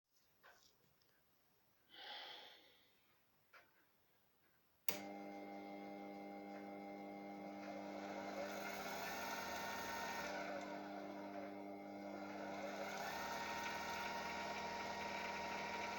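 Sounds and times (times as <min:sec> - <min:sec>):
soft rustle: 0:00.1 - 0:01.9
electric motor humming and whining: 0:04.9 - 0:15.9.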